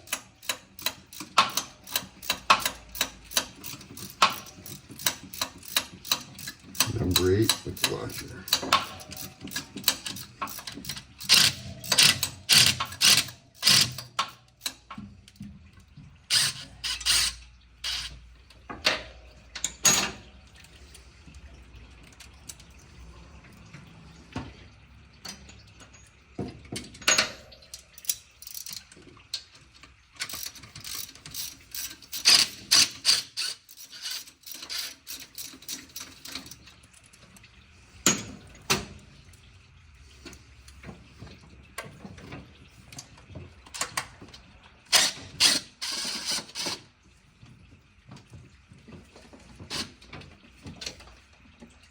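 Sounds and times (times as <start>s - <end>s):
ratchet wrench clicking: 0.1s - 14.8s, 16.3s - 18.1s, 30.2s - 36.3s.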